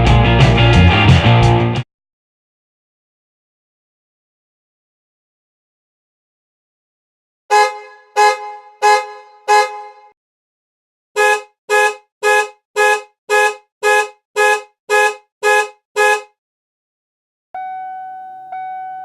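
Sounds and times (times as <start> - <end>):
car horn beeping: 7.5 - 10.1, 11.2 - 16.3.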